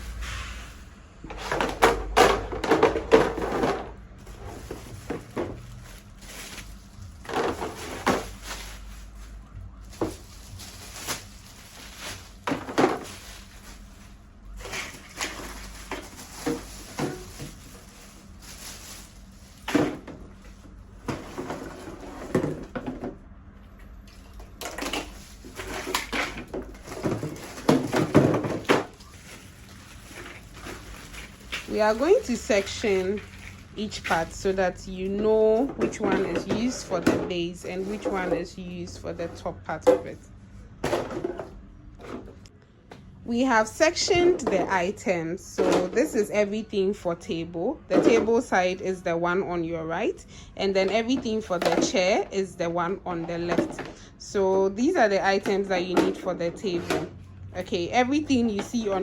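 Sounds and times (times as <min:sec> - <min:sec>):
chair parts knocking and clattering: 0:01.2 - 0:05.9, 0:07.2 - 0:08.5, 0:24.6 - 0:29.0, 0:35.3 - 0:38.4, 0:39.8 - 0:42.5
rustling: 0:03.3 - 0:22.3, 0:25.0 - 0:34.6.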